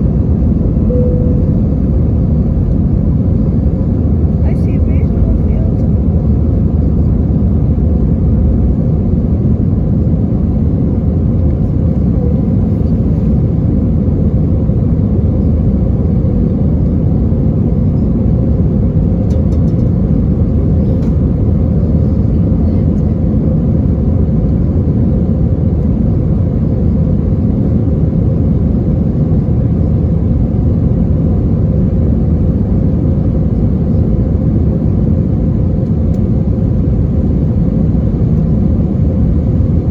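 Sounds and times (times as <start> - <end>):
airplane cabin rumble: 0.0 - 39.9
faint constant hum: 0.0 - 39.9.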